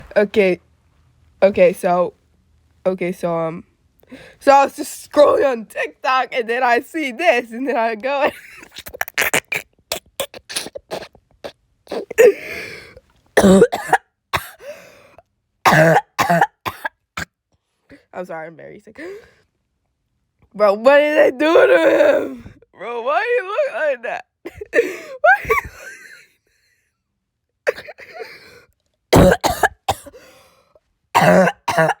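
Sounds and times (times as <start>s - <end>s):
person coughing: 11.9s - 12.6s, 13.4s - 14.8s, 15.7s - 16.9s, 27.7s - 28.5s, 29.2s - 30.2s, 31.2s - 32.0s.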